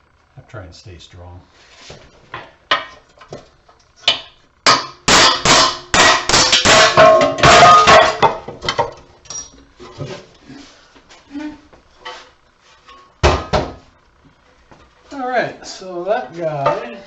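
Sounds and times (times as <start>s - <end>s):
hammer on metal: 4.1s - 8.3s.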